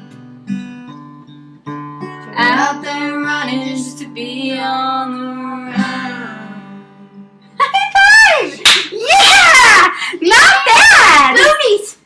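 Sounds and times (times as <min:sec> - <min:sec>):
acoustic guitar strumming: 0:00.0 - 0:08.4
person singing: 0:02.3 - 0:07.0.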